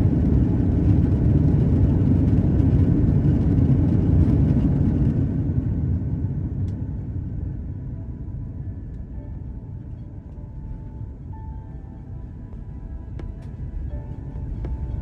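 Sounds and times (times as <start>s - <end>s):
airplane cabin rumble: 0.0s - 15.0s.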